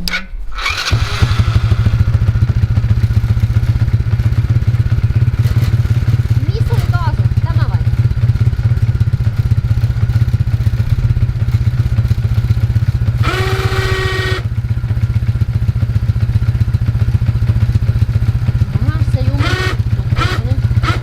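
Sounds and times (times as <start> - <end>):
engine idling: 0.0 - 21.0.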